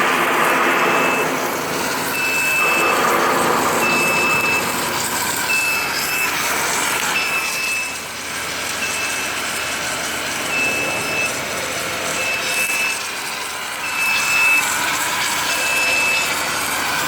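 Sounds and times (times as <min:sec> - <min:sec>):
industrial machinery noise: 0:00.0 - 0:17.0
electronic warning beeper: 0:00.8 - 0:01.4, 0:02.0 - 0:06.5, 0:07.1 - 0:08.0, 0:08.8 - 0:09.8, 0:10.4 - 0:11.4, 0:12.0 - 0:13.1.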